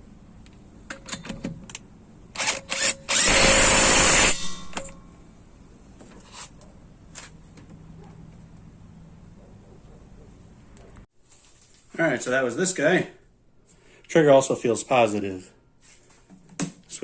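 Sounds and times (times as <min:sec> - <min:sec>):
impact wrench: 0:02.4 - 0:05.0.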